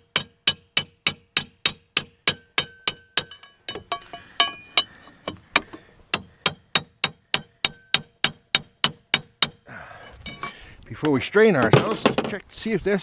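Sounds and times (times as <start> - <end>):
hammer striking metal: 0.0 - 9.6
light metallic clinks and taps: 2.7 - 6.9, 10.1 - 10.6.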